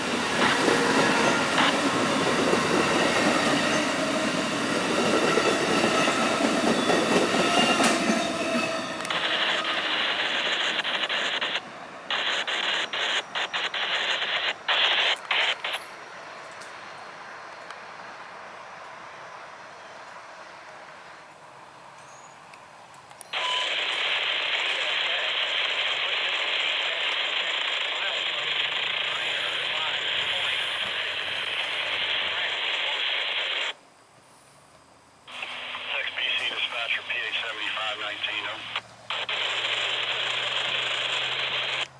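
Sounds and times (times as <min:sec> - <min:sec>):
radio scanner static hiss: 0:00.4 - 0:00.6, 0:09.0 - 0:16.2, 0:23.3 - 0:33.8, 0:35.2 - 0:41.9
garbled radio transmission: 0:09.0 - 0:15.9, 0:23.4 - 0:33.8, 0:35.3 - 0:41.9.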